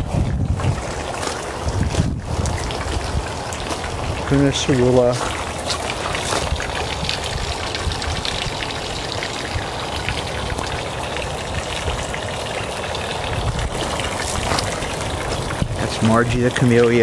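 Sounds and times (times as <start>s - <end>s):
footsteps on gravel: 0.6s - 6.7s, 13.7s - 15.6s.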